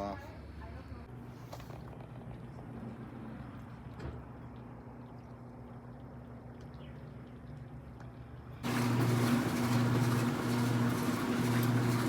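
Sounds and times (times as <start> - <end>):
steady mechanical hum: 0.0 - 12.0
loud machine noise: 8.6 - 12.0.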